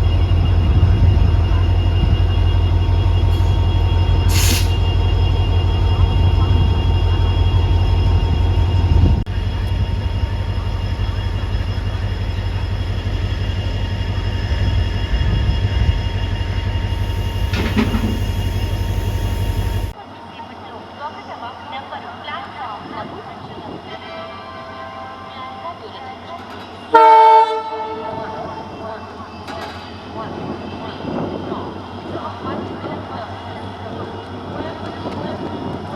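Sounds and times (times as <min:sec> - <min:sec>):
diesel locomotive engine hum: 0:00.0 - 0:35.9
high hiss: 0:04.3 - 0:04.9.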